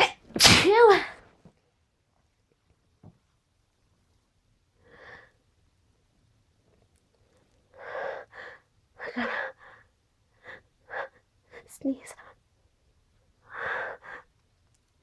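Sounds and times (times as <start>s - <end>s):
person gasping before a sneeze: 0.0s - 1.1s.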